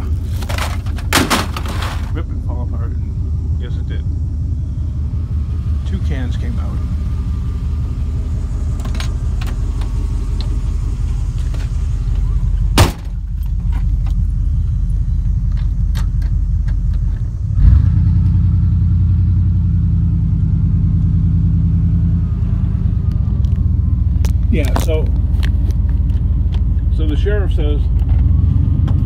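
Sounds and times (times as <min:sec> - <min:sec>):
truck engine idling: 0:00.0 - 0:29.0
sharp bang: 0:12.8 - 0:13.2.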